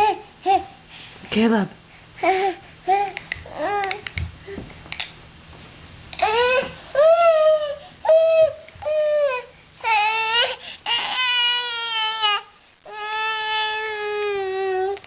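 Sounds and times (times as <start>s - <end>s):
baby crying: 6.2s - 15.0s.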